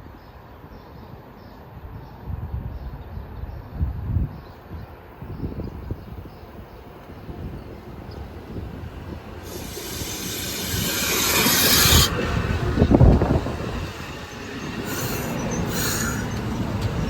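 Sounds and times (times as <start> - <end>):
train rumbling: 4.9 - 17.0
loud hiss: 9.4 - 16.7.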